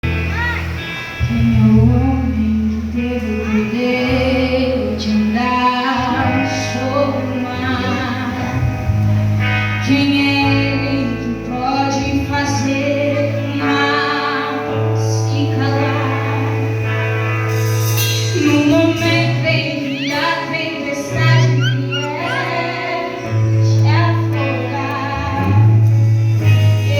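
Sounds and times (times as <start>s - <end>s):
woman singing worship song: 1.2s - 9.0s, 9.7s - 17.2s, 18.2s - 26.9s
instrumental accompaniment: 15.8s - 26.9s.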